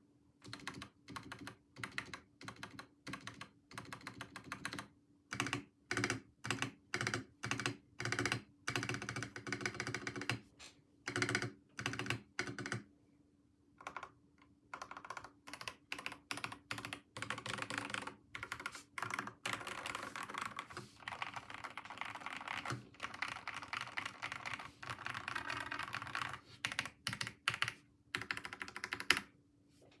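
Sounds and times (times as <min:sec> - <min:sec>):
typing on mechanical keyboard: 0:00.4 - 0:10.4, 0:11.0 - 0:12.9, 0:13.8 - 0:29.3.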